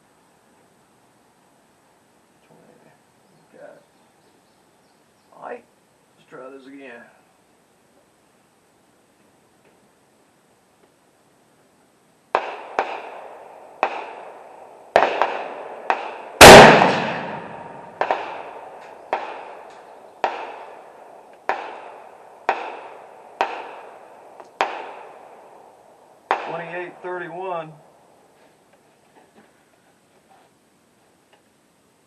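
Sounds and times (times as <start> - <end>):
fainter sharp gunshots: 12.3 - 25.5, 26.3 - 27.7
loud rifle shot with echo: 12.3 - 25.5, 26.3 - 27.2.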